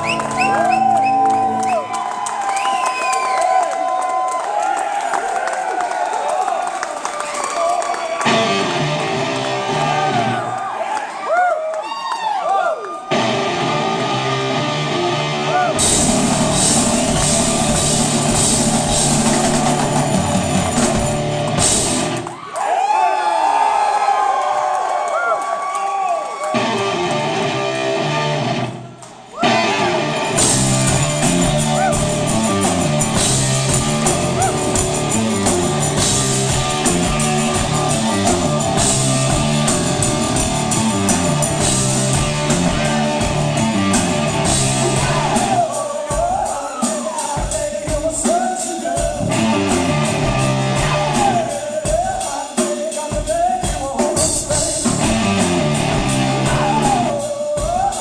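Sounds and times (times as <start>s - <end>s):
rock band playing: 0.0s - 1.7s, 8.2s - 10.5s, 13.1s - 22.4s, 26.5s - 58.0s
person singing: 29.4s - 58.0s.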